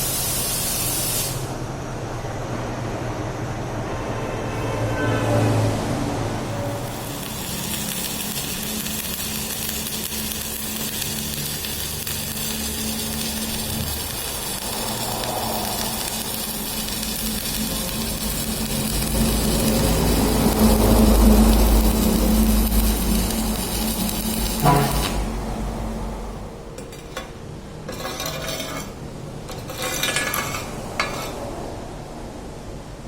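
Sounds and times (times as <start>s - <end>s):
arc welding crackling sizzle: 0.0s - 1.6s, 6.5s - 25.9s, 26.8s - 31.3s.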